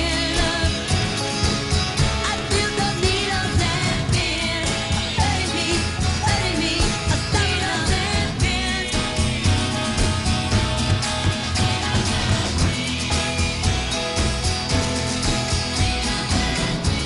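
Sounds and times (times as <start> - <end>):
pop band playing with singing: 0.0 - 17.0.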